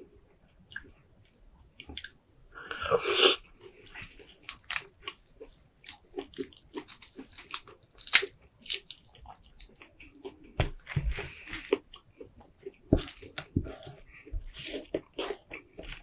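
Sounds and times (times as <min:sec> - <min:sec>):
wet chewing and smacking: 0:03.9 - 0:16.0.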